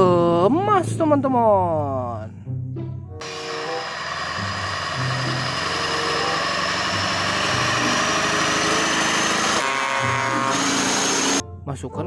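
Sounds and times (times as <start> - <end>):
engine-like running noise: 3.2 - 11.4.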